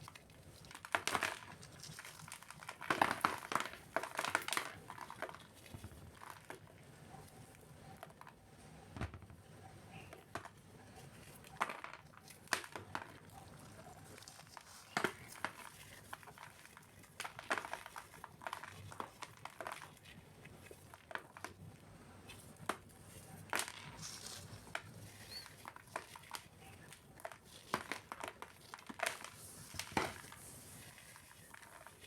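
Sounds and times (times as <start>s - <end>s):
cement cubes crunching: 0.0s - 6.8s, 10.1s - 21.7s, 22.3s - 32.0s.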